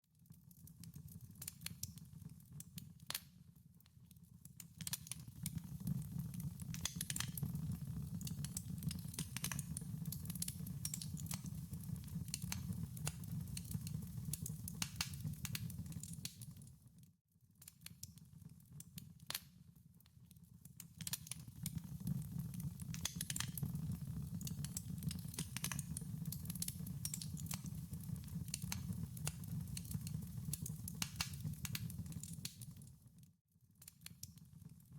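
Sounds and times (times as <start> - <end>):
wood fire popping and snapping: 4.5 - 16.7, 20.9 - 32.9.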